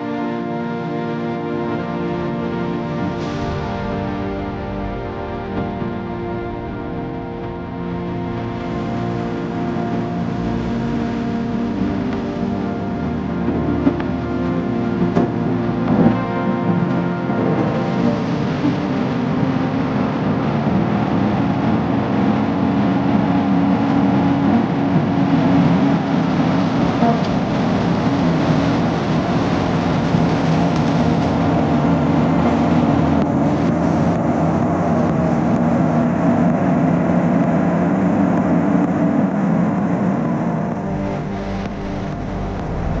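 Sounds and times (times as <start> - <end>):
road noise: 1.0 - 43.0
vehicle engine running: 17.9 - 43.0.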